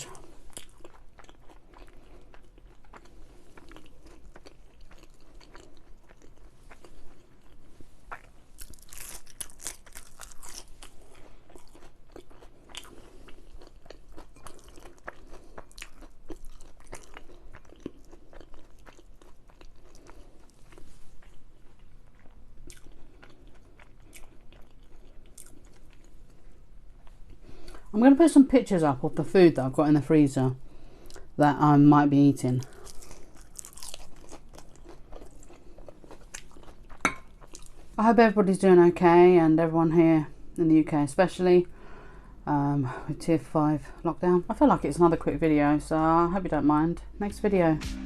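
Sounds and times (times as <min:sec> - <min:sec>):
crunching crispy food: 0:00.0 - 0:27.9, 0:32.5 - 0:38.0.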